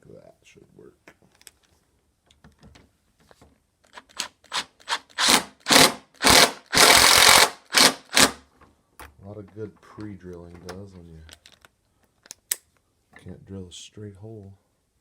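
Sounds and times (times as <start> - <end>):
cordless drill bursts: 4.2 - 8.4.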